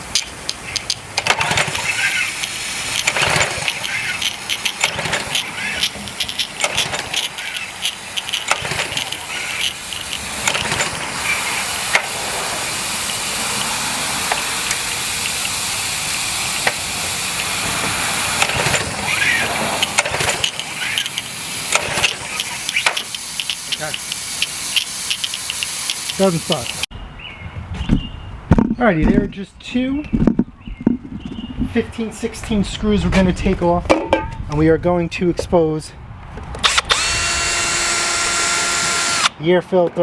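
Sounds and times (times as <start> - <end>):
steady hiss: 0.0 - 26.9
recoil cord pull-starting engine: 0.1 - 26.9, 36.6 - 39.3.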